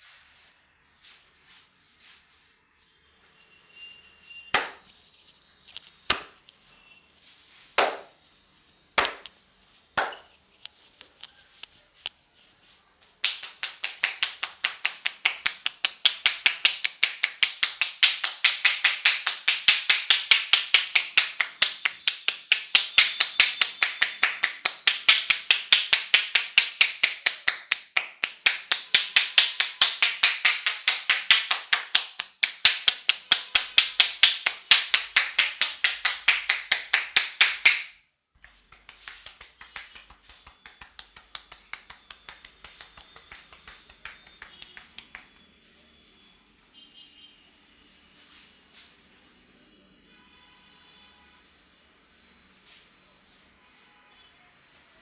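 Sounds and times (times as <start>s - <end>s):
hands slapping a head: 4.6s - 4.9s, 6.1s - 6.4s, 7.8s - 8.1s, 9.0s - 9.4s, 10.0s - 10.3s, 13.2s - 45.4s
fast tapping strokes: 13.2s - 45.3s.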